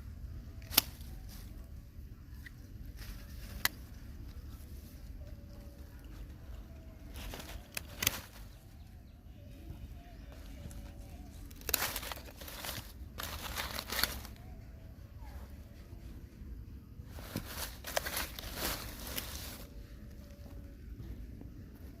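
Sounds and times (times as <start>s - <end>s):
low steady hum: 0.0s - 22.0s
crinkling and rustling: 2.8s - 8.9s, 10.2s - 14.6s, 17.0s - 22.0s.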